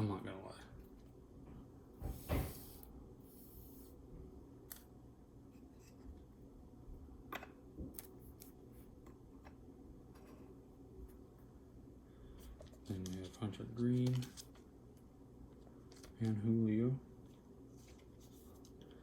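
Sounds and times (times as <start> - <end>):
cards sliding and rubbing: 2.1 - 4.0.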